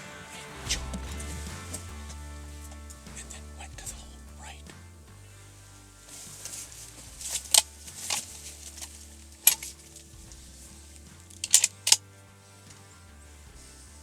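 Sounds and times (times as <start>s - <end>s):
quiet background music: 0.0s - 14.0s
sharp clicks and knocks: 6.4s - 12.1s.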